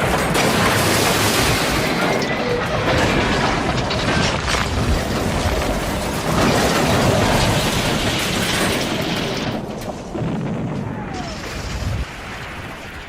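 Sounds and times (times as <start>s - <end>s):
clatter and knocks: 0.0s - 10.9s
crash and explosion rumbling: 0.0s - 13.0s.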